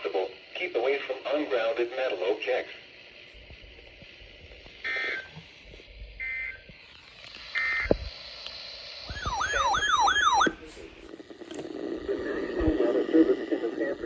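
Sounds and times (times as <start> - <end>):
electronic data tone bursts: 9.0 - 10.7
electronic siren-like yelp: 9.1 - 10.9.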